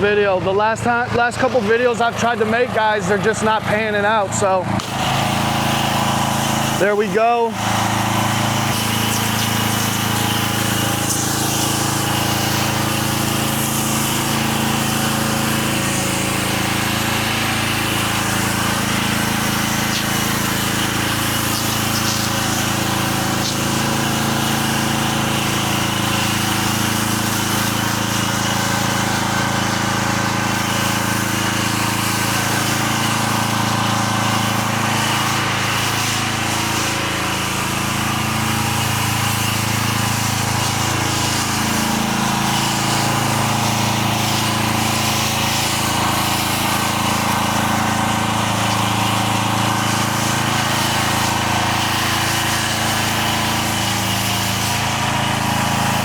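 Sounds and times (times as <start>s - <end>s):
pressure washer engine running: 0.0s - 56.0s.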